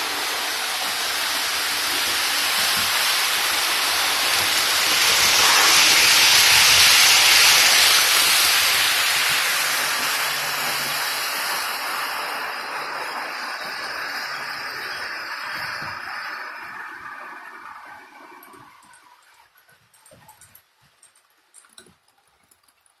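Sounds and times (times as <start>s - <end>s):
model train rolling on track: 0.0s - 23.0s.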